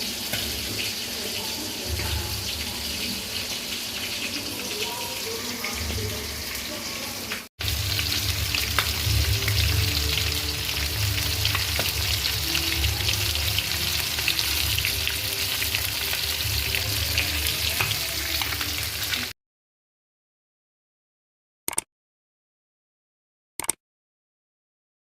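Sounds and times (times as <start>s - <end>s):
food sizzling in hot oil: 0.0s - 19.4s.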